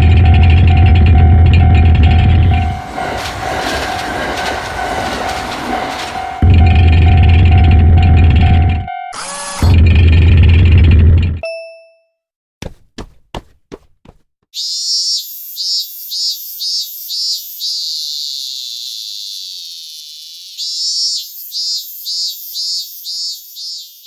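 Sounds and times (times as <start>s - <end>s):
high thin pulsing tone: 0.1s - 8.9s.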